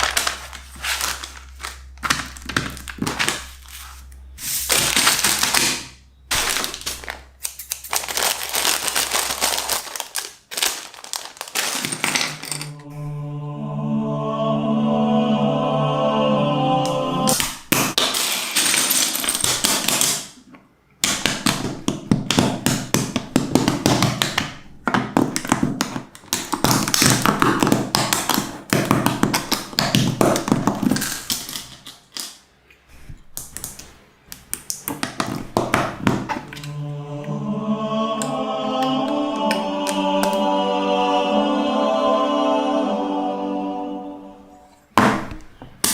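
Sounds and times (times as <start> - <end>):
choral chant: 12.5 - 17.4, 36.5 - 44.9.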